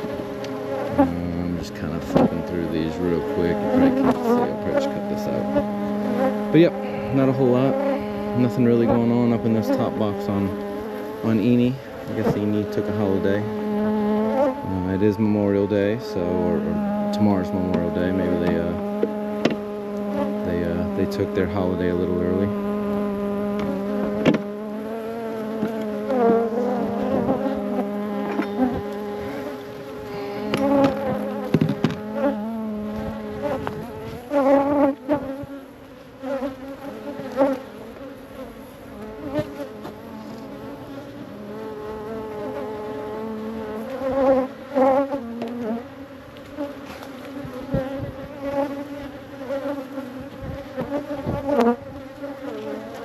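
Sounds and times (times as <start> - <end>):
honeybees buzzing: 0.0 - 53.0
short knocks: 23.6 - 24.5, 30.5 - 32.0.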